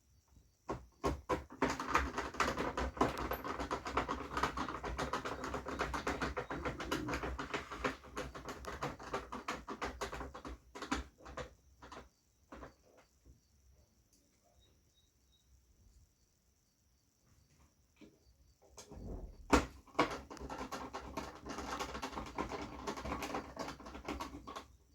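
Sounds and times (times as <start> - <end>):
small clicks and clatters: 0.7 - 13.2, 18.0 - 24.9.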